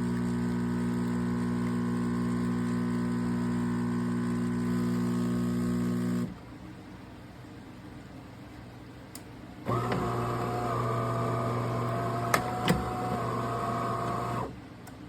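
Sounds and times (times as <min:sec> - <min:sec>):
espresso machine pump buzzing: 0:00.0 - 0:06.4, 0:09.7 - 0:14.5.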